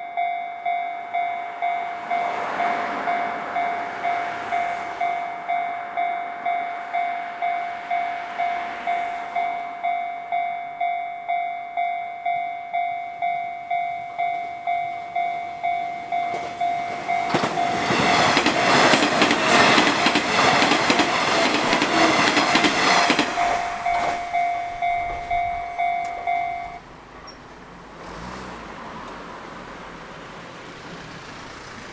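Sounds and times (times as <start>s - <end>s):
level-crossing warning bell: 0.0s - 27.6s
low traffic hum: 0.0s - 31.9s
train wheels clattering: 13.8s - 27.4s.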